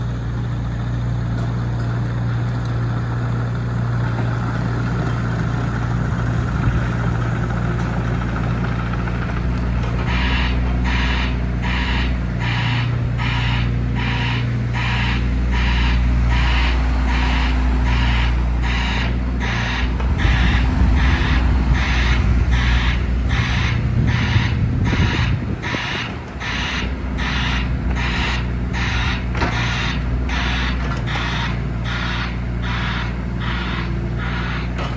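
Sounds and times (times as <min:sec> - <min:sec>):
diesel engine running: 0:00.0 - 0:34.9
beeping alarm: 0:10.0 - 0:34.9.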